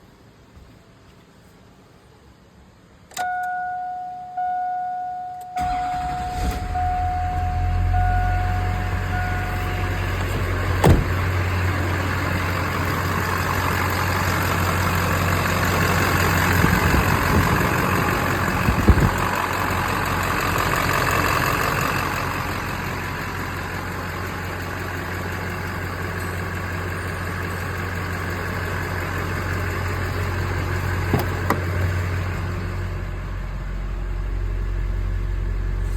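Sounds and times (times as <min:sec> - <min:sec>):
dashboard warning chime beeping: 0:03.2 - 0:11.4
car engine cranking and idling: 0:05.6 - 0:35.9.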